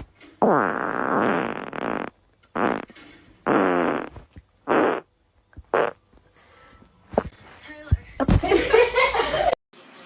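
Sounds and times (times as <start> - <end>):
farts: 0.0 - 6.0, 7.1 - 7.3.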